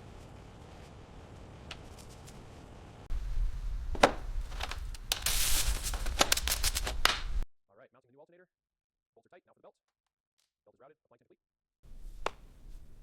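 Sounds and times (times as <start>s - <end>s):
scraping hiss: 0.0s - 7.4s
low rumble: 2.4s - 6.0s.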